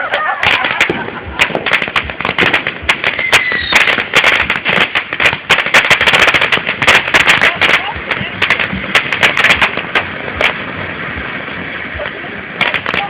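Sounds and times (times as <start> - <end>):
firework whistle: 0.0 - 13.0
fireworks crackling and popping: 0.0 - 13.0.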